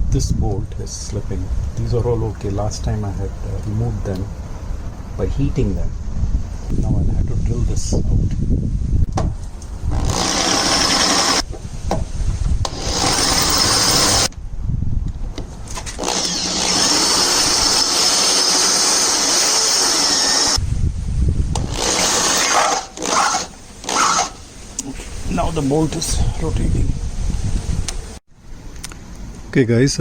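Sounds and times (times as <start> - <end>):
electric drill boring metal: 9.9 - 11.4, 12.6 - 14.3, 16.0 - 20.6, 21.6 - 24.4.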